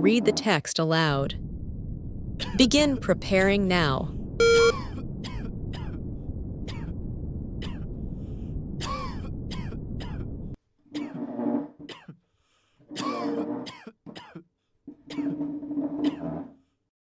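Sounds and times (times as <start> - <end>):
low background rumble: 1.0 - 10.6
people coughing: 8.8 - 10.2, 11.0 - 11.2, 11.9 - 12.2, 13.0 - 14.5, 15.1 - 15.4.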